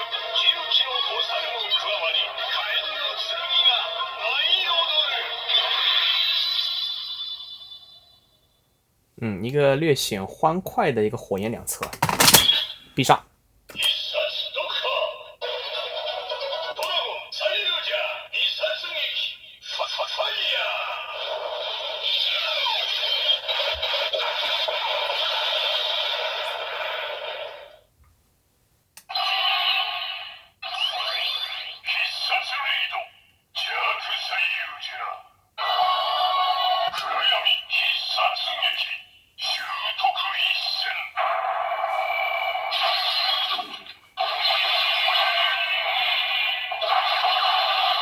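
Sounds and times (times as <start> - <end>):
toy belt electronic sound effects: 11.8 - 12.9, 19.7 - 27.8, 35.6 - 48.0
announcer calls through small speaker: 31.1 - 35.8, 37.0 - 41.3.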